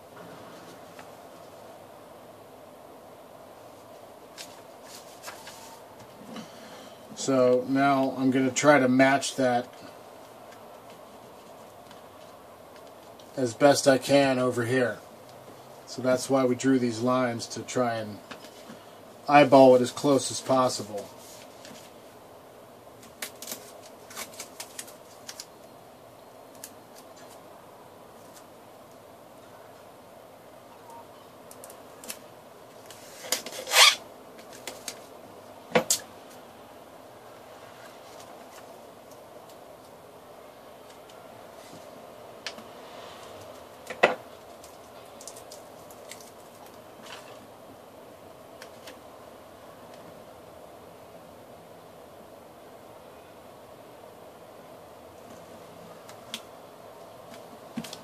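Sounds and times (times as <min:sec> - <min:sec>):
steady background hum: 0:00.0 - 0:58.0
paper crackling and clicking: 0:23.0 - 0:25.5, 0:26.5 - 0:27.4, 0:34.4 - 0:35.1, 0:43.8 - 0:47.4.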